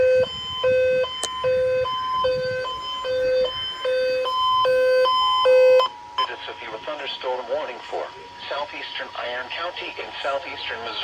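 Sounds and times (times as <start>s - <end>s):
emergency alert tone: 0.0s - 11.0s.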